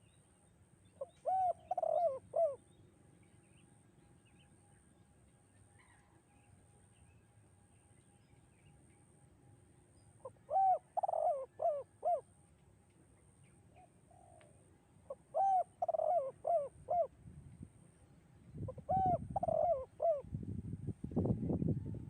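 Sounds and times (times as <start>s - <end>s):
dove cooing: 1.0s - 2.6s, 10.2s - 12.3s, 14.1s - 17.1s, 18.6s - 20.3s.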